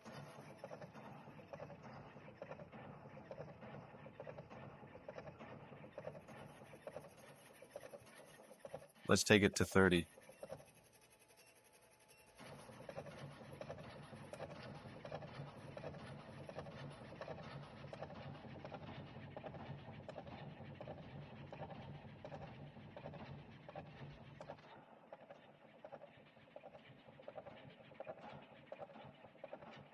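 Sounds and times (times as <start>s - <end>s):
steady motor hum: 0.0s - 9.0s, 12.2s - 29.9s
fast mechanical rattle: 12.3s - 24.8s.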